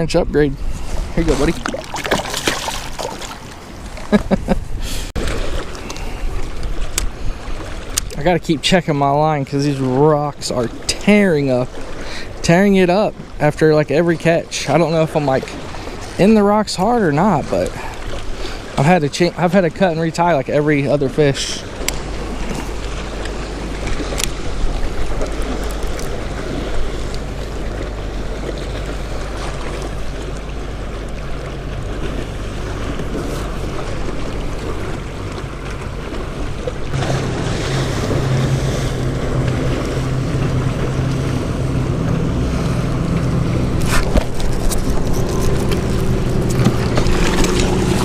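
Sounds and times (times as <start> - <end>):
wind on microphone: 0.0 - 2.0, 3.7 - 8.2, 21.6 - 48.0
waves slapping kayak: 0.0 - 48.0.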